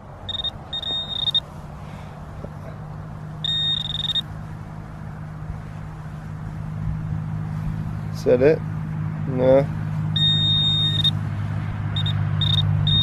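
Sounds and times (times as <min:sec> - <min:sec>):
steady low hum: 0:00.0 - 0:13.0
metal detector target tone: 0:00.3 - 0:01.4, 0:03.4 - 0:04.2, 0:10.2 - 0:11.2, 0:12.0 - 0:13.0.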